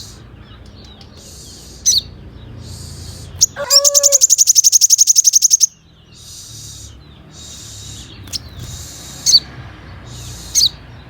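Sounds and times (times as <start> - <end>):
bird high hissing notes: 0.0 - 0.3
bird sharp downward chirp: 1.2 - 9.4.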